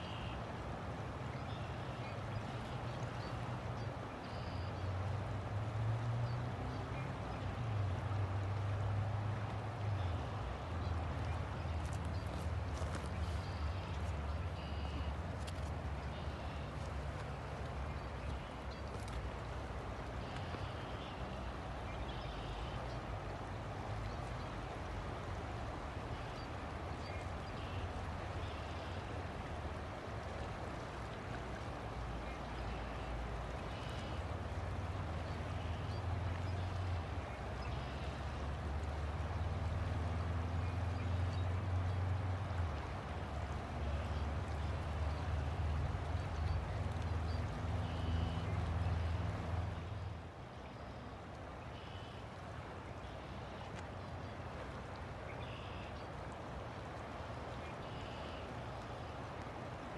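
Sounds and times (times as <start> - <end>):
river water flowing: 0.0 - 59.9.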